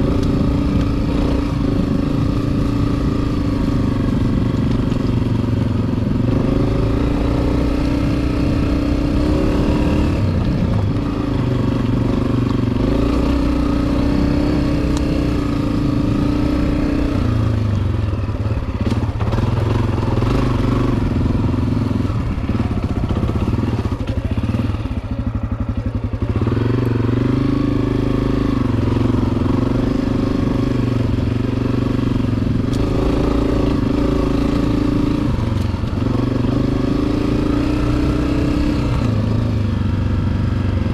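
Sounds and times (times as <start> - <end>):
dirt bike engine revving: 0.0 - 17.7, 26.2 - 39.8.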